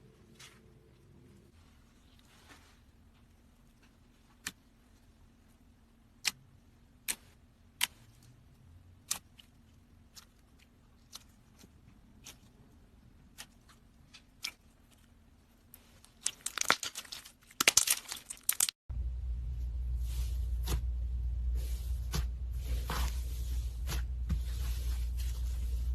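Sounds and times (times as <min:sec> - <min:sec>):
slime crackling and popping: 0:16.1 - 0:18.8
steady low hum: 0:18.9 - 0:25.9.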